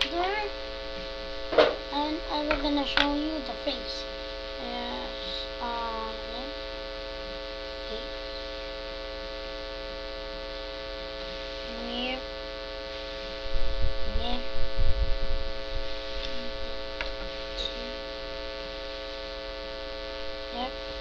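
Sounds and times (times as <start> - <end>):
electrical mains hum: 0.0 - 21.0
faint vocal sounds: 4.6 - 6.6.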